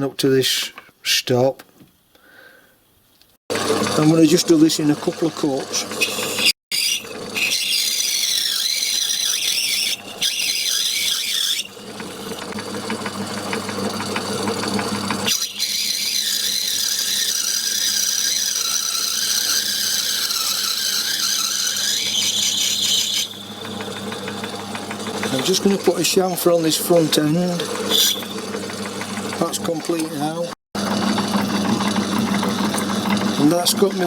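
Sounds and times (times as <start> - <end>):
lathe humming: 3.5 - 34.0
cutting tool squealing: 5.7 - 12.6, 15.2 - 30.5.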